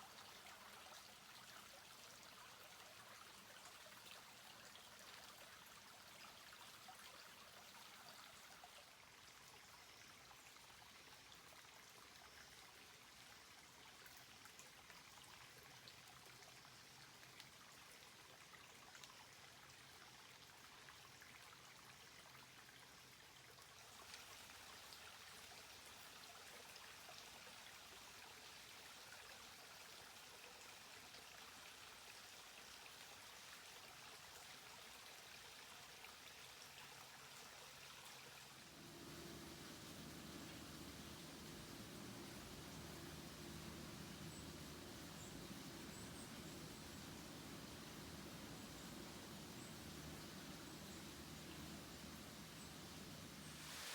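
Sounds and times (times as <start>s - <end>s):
stream water rushing: 38.5s - 53.9s.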